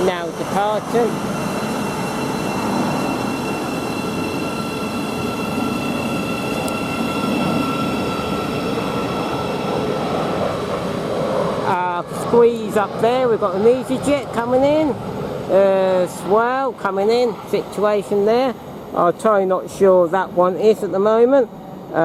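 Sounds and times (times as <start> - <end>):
high electric whine: 0.0 - 21.2
train wheels rumbling on rails: 0.0 - 21.3.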